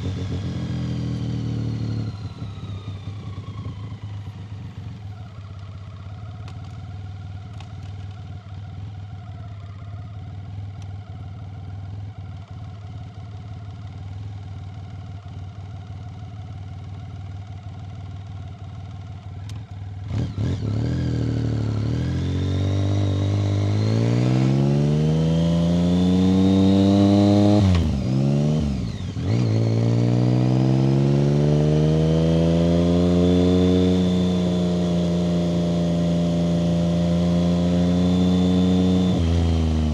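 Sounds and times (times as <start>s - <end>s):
motorcycle engine revving: 0.0s - 4.4s, 17.4s - 39.9s.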